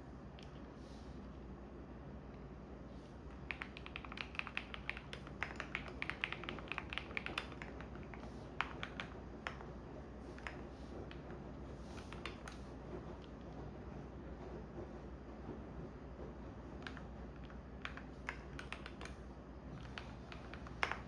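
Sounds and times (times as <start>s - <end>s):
washing machine hum: 0.0s - 21.0s
keyboard typing: 3.3s - 9.7s, 12.0s - 12.6s, 16.8s - 19.2s, 19.8s - 21.0s.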